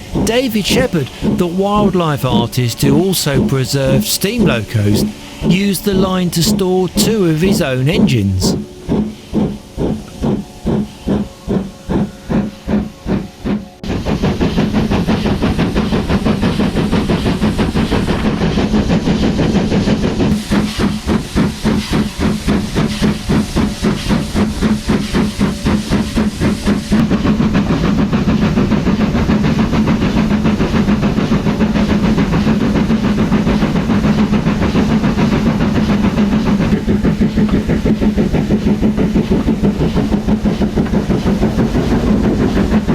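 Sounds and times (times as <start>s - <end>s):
steam hiss with fast beats: 0.0s - 42.9s
steam locomotive exhaust chuffs: 8.6s - 42.9s.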